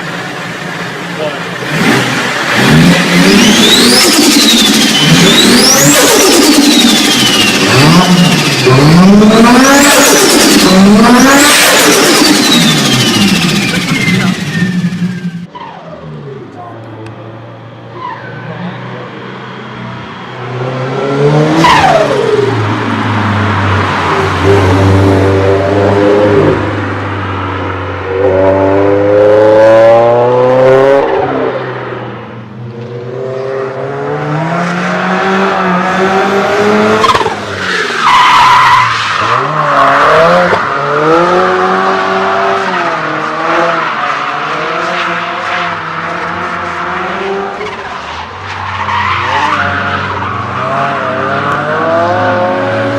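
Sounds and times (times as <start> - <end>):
car engines revving hard: 0.0 - 52.9
tyre squeal and skidding: 2.4 - 8.7, 9.3 - 16.4, 17.9 - 19.0, 21.5 - 22.6, 36.9 - 41.4, 42.0 - 51.5.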